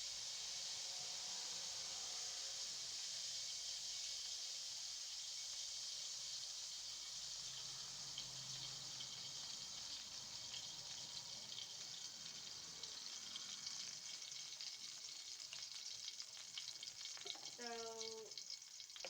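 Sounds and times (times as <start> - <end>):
food frying in hot oil: 0.0 - 19.0.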